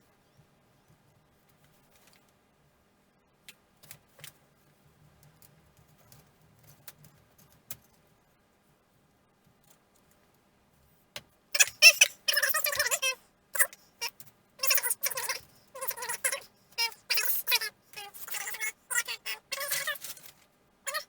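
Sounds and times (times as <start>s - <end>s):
faint rustling: 19.6s - 20.6s.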